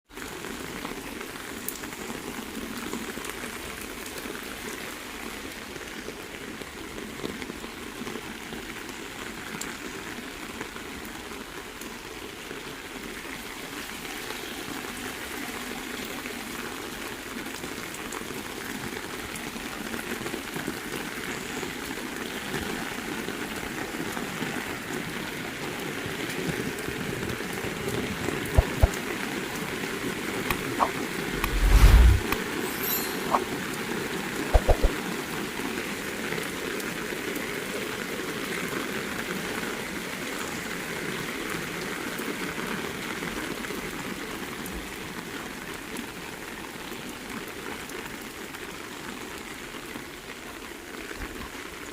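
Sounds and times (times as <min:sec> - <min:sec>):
heavy rain falling: 0:00.2 - 0:31.6.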